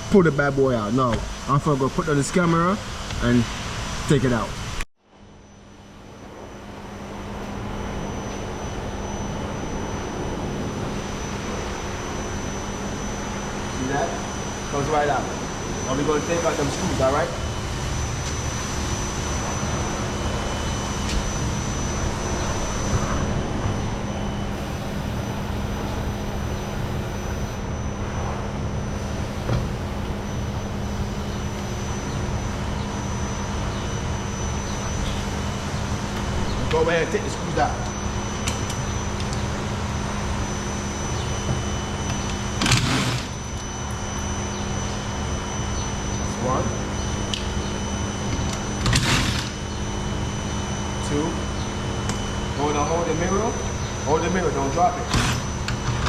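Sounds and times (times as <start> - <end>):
low hum: 0.0 - 56.0.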